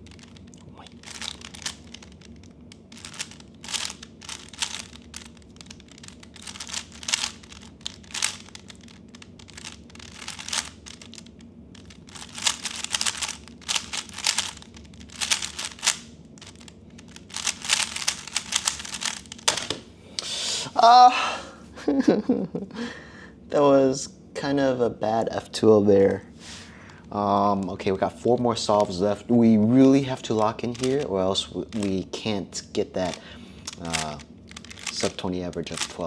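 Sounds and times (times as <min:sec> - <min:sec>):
puzzle cube clicking: 0:00.1 - 0:19.8, 0:30.4 - 0:31.1, 0:31.7 - 0:31.9, 0:33.0 - 0:36.0.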